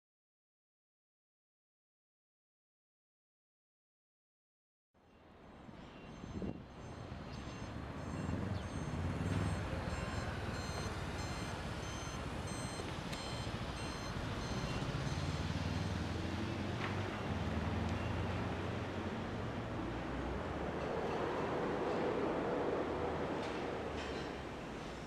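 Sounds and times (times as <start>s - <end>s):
low rumble of heavy engines: 5.2s - 25.0s
vehicle reversing alarm beeping: 5.6s - 16.7s.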